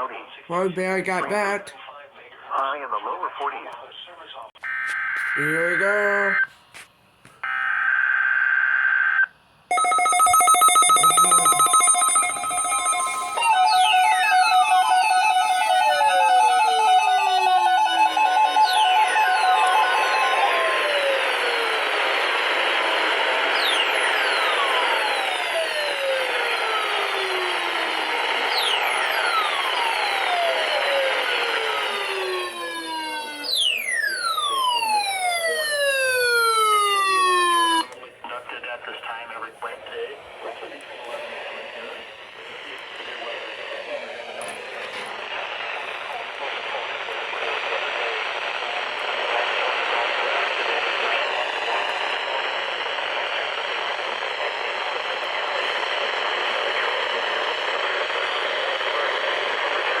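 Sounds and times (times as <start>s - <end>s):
radio static hiss: 0.0s - 6.9s, 37.8s - 60.0s
siren falling sweeps: 10.0s - 37.9s.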